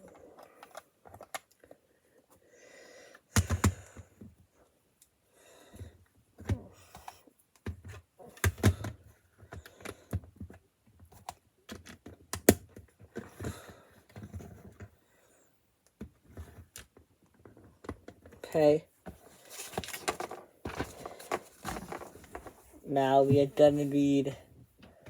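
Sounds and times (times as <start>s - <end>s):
rustling: 19.1s - 24.4s.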